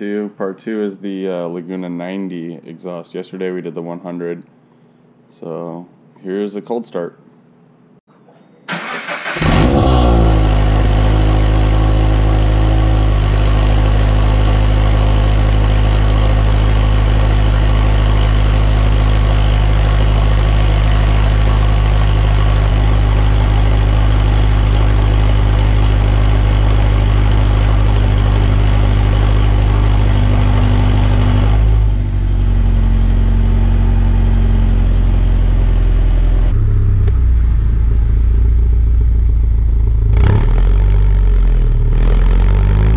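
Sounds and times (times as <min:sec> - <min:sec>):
starter cranking engine: 0:08.7 - 0:10.9
car engine idling: 0:08.7 - 0:42.9.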